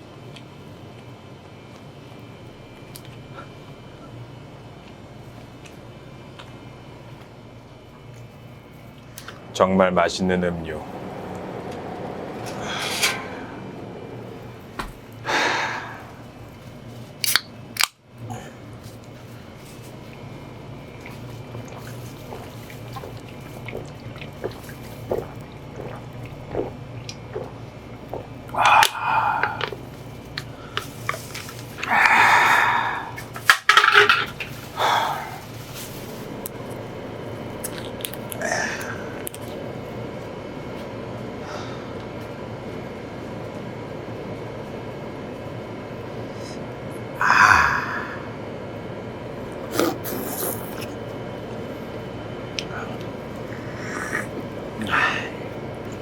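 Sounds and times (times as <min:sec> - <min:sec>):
store background hum: 0:00.0 - 0:56.0
person gulping a drink: 0:21.0 - 0:29.9, 0:37.6 - 0:39.5, 0:49.6 - 0:51.0, 0:52.6 - 0:56.0.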